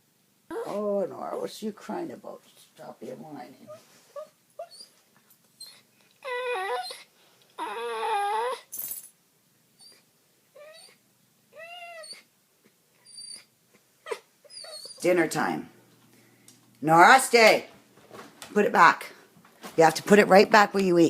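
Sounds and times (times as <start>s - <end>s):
dog whining: 0.5s - 0.8s, 3.7s - 5.0s, 5.6s - 8.7s, 9.8s - 12.3s, 12.9s - 15.2s.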